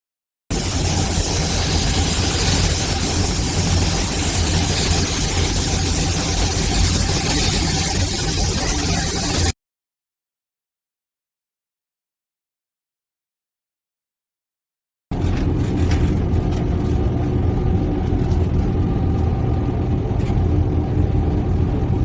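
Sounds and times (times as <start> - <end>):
car engine running: 0.5 - 9.5, 15.1 - 22.0.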